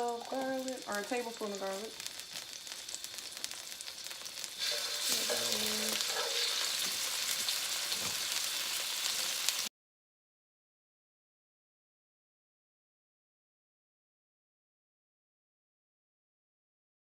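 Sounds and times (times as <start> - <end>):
garlic sizzling in oil: 0.0 - 9.7
stirring in a wok: 4.4 - 9.6.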